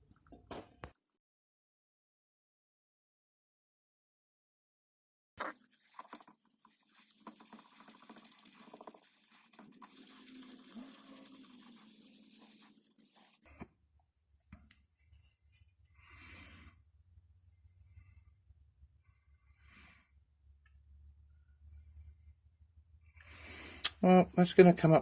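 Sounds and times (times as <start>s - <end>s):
scratchy rubbing on brass: 5.7s - 13.6s.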